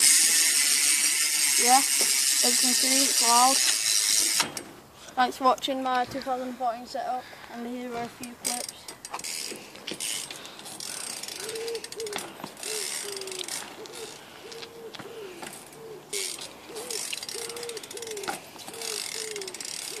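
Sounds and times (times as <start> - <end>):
bike freewheel ticking: 0.0 - 4.7, 8.4 - 14.2, 15.6 - 20.0.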